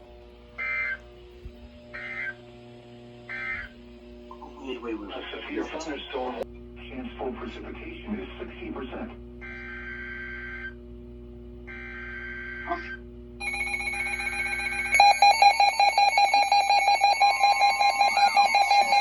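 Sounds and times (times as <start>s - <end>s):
rapidly pulsing alarm beeps: 9.4s - 10.8s, 11.7s - 19.0s
alert tone: 13.4s - 19.0s
warbling digital data bursts: 13.4s - 19.0s.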